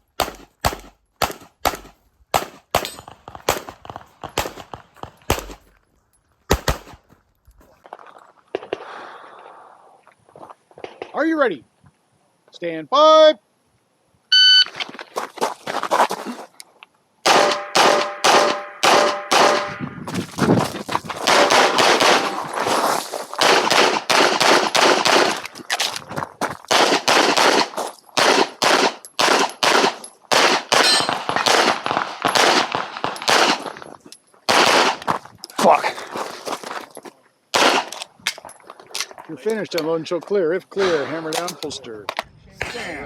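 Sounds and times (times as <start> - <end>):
handgun shots: 0.2 - 5.6, 6.5 - 7.0, 17.3 - 19.8, 21.2 - 22.4, 26.7 - 33.8
shot timer beep: 14.3 - 14.7
steel targets ringing: 30.8 - 31.2.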